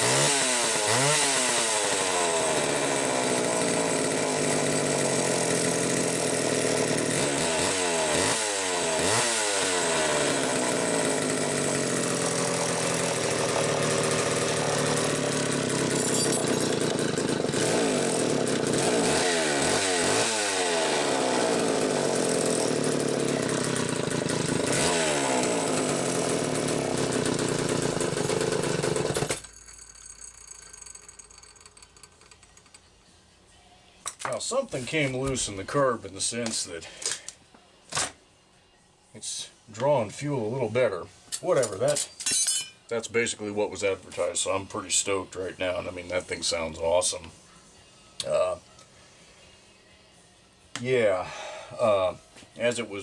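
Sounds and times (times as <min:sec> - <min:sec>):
chainsaw revving: 0:00.0 - 0:31.6, 0:44.1 - 0:47.3.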